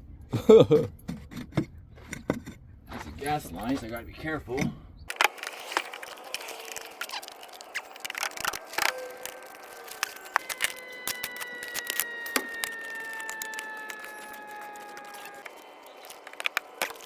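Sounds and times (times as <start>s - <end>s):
shovel scraping in dirt: 1.1s - 3.9s
faint steady tones: 3.0s - 17.0s.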